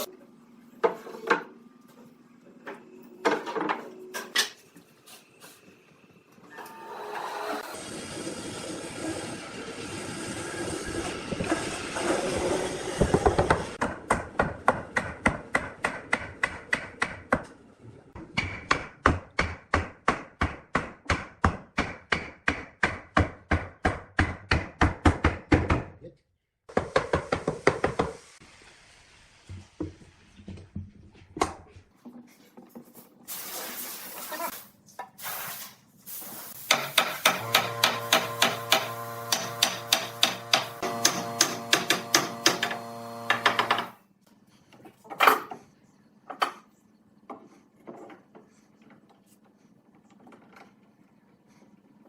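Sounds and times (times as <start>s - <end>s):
steady tool noise: 36.7s - 43.9s.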